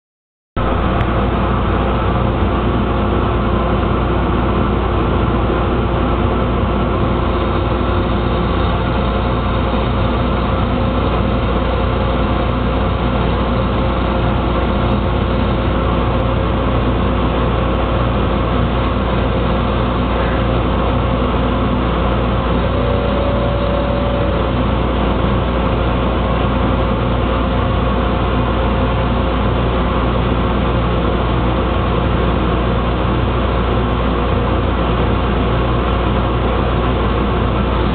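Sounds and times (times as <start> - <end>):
lathe running: 0.6 - 30.6.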